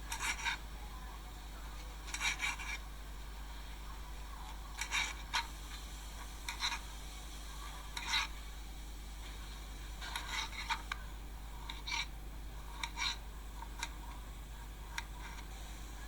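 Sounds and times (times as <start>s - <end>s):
low steady hum: 0.0s - 16.0s
knife cutting food: 0.1s - 0.6s, 2.1s - 2.8s, 4.8s - 5.5s.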